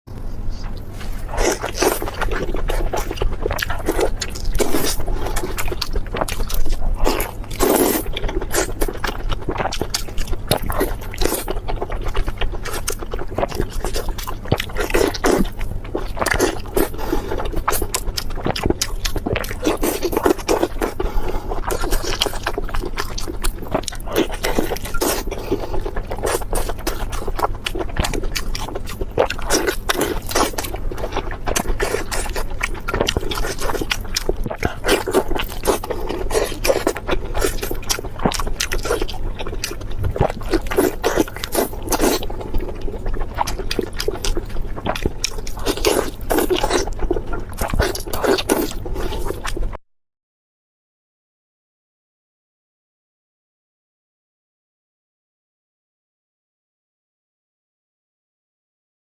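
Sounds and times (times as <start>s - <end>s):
chewing with crackles: 0.5s - 49.8s.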